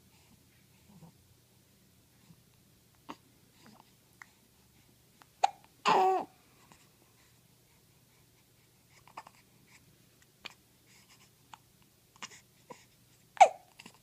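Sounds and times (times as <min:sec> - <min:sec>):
baby breaths and small clicks: 0:03.6 - 0:04.4
baby hiccup: 0:05.4 - 0:06.3, 0:13.4 - 0:14.0.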